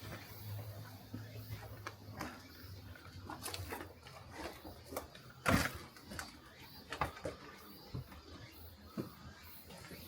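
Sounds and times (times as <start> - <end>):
footsteps on old floor: 0.0 - 6.3.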